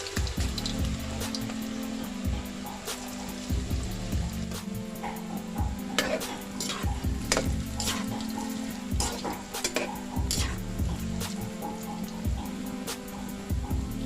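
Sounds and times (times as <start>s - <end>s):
background music with steady beat: 0.0s - 14.0s
spoon scraping and clinking in pot: 5.9s - 10.6s.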